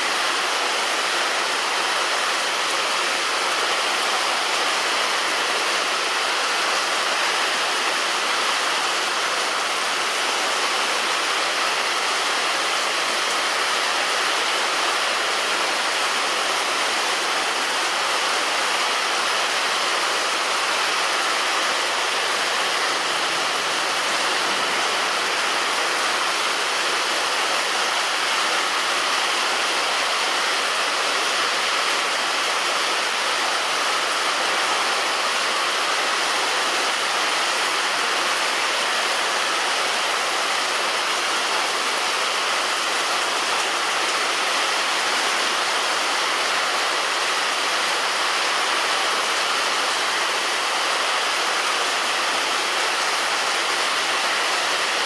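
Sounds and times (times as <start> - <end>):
heavy rain on a roof: 0.0 - 55.0.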